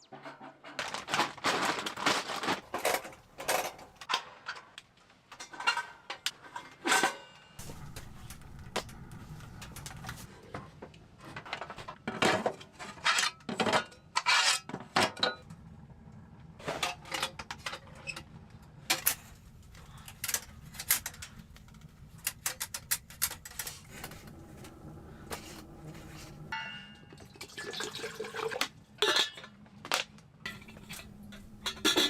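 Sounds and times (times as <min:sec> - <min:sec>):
metal utensils clinking on cookware: 0:25.3 - 0:27.6, 0:29.0 - 0:29.6, 0:30.5 - 0:32.0.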